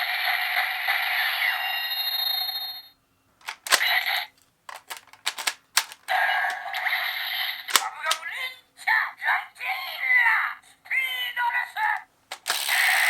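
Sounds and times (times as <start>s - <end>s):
plastic mechanism clicks: 3.4s - 6.6s, 7.7s - 8.3s, 12.3s - 13.0s
toy gun electronic sound effects: 3.5s - 8.2s, 12.3s - 13.0s.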